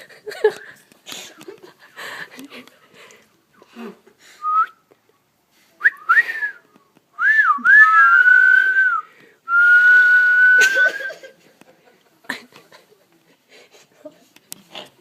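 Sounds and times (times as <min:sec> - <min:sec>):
person whistling: 0:04.4 - 0:04.8, 0:05.8 - 0:06.6, 0:07.2 - 0:11.2.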